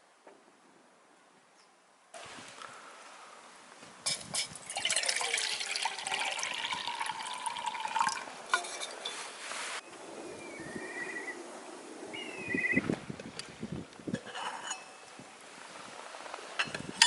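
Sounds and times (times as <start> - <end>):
liquid pouring into container: 4.6 - 8.3.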